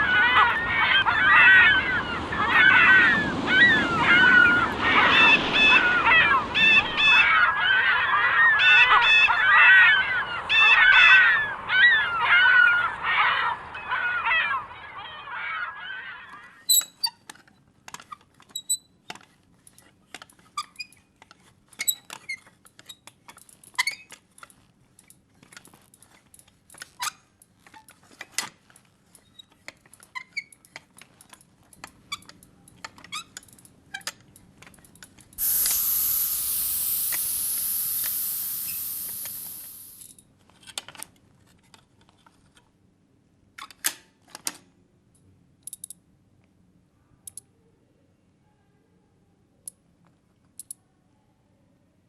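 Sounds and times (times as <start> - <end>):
waterfowl calling: 35.4 - 40.0.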